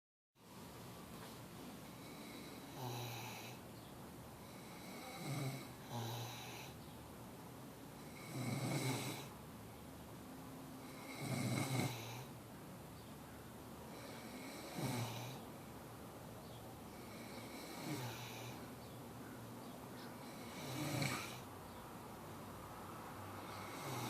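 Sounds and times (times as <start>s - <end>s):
person snoring: 2.0s - 3.6s, 4.4s - 6.8s, 8.0s - 9.3s, 10.8s - 12.3s, 13.9s - 15.4s, 16.9s - 18.6s, 20.2s - 21.5s, 23.4s - 24.0s.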